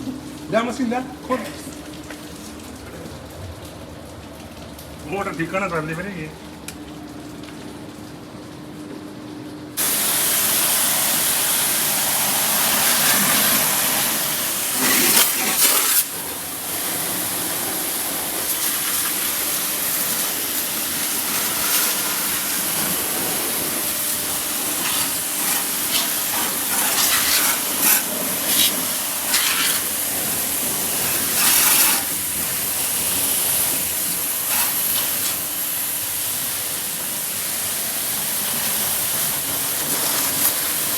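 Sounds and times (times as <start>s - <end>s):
high-pressure water jet hissing: 9.8s - 40.9s.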